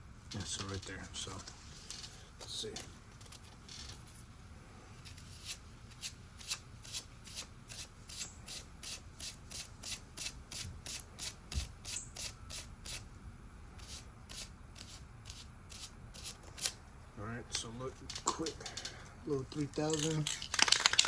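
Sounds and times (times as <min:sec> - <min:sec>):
hand sanding strokes: 0:05.3 - 0:13.0, 0:13.8 - 0:16.8.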